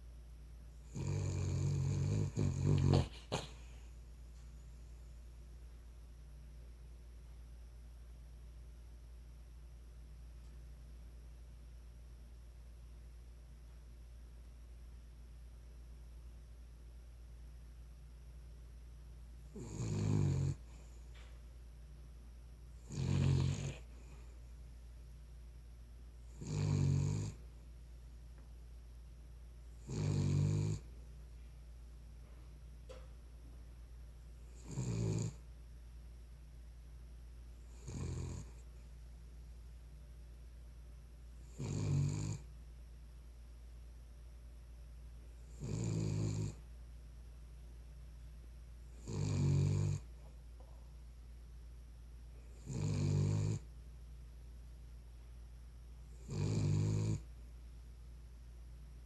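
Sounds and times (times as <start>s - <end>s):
dog snoring: 0.8s - 3.8s, 19.5s - 21.0s, 22.8s - 24.3s, 26.2s - 27.4s, 29.8s - 30.9s, 34.4s - 35.4s, 37.6s - 38.7s, 41.4s - 42.5s, 45.4s - 46.6s, 48.9s - 50.2s, 52.4s - 53.7s, 56.1s - 57.3s.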